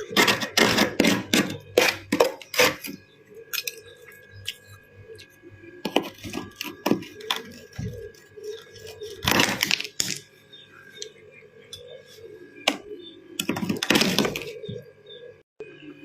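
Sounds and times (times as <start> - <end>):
frost and ice crunching: 0.0 - 11.1, 13.4 - 14.9
brittle ice clicks: 1.5 - 10.3.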